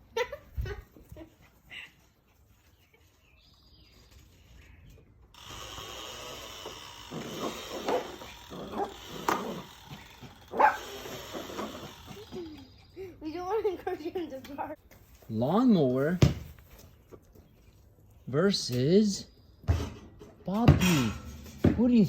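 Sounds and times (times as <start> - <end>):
puppy barking: 7.2 - 9.7, 10.5 - 11.6.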